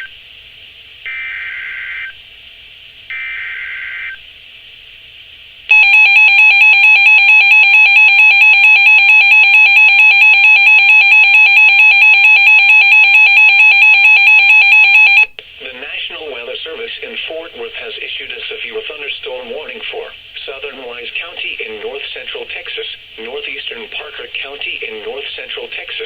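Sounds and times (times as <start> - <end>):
fluttering attention alarm tone: 5.7 - 15.3.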